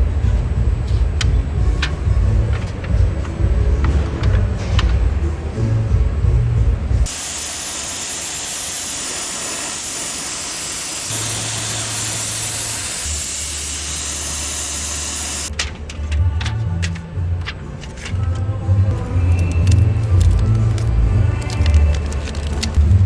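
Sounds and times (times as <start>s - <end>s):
steady spraying hiss: 7.1s - 15.5s.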